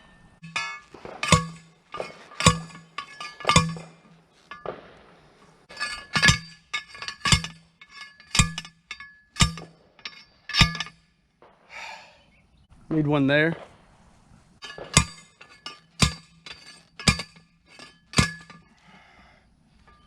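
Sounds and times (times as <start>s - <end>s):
post driver clanking on metal post: 0.4s - 4.8s, 5.7s - 11.0s, 14.6s - 18.7s.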